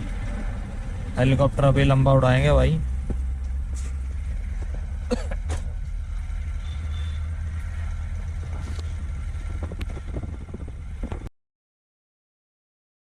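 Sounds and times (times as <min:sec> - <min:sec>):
motorcycle engine idling: 0:02.8 - 0:11.3.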